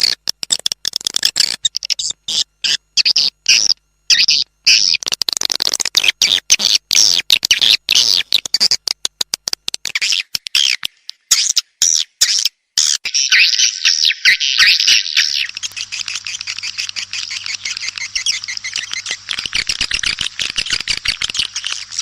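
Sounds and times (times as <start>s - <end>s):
swiftlets twittering chirps: 12.8s - 22.0s.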